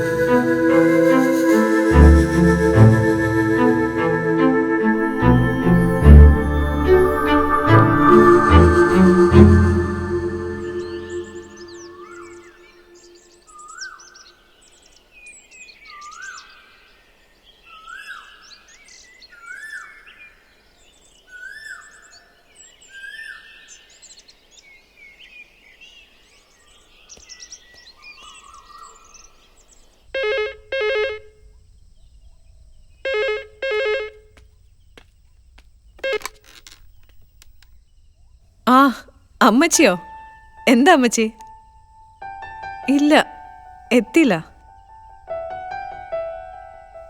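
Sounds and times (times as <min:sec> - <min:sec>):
rising whistled bird call: 0:00.0 - 0:13.2
birds chirping: 0:05.4 - 0:13.2.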